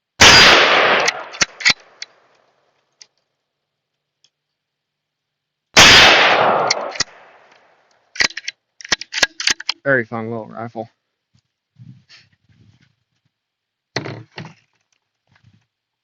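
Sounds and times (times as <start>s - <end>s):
rifle shots echoing: 0.2s - 2.0s, 5.8s - 7.4s
rifle bolt clicks: 1.0s - 2.2s, 6.6s - 7.6s, 8.2s - 9.8s.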